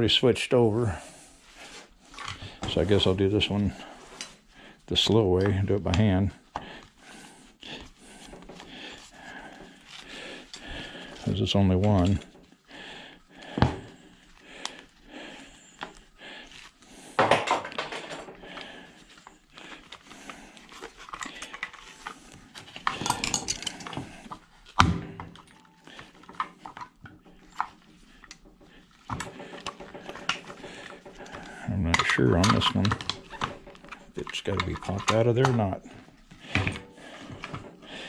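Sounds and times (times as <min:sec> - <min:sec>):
metal parts and tools clinking: 0:21.0 - 0:24.4, 0:25.2 - 0:35.9.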